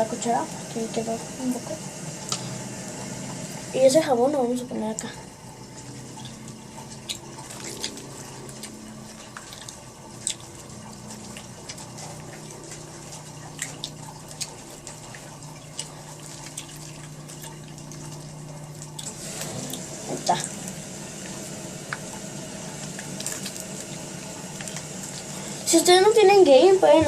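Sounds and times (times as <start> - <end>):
water dripping: 0.0 - 27.0
tap water running into sink: 8.3 - 27.0.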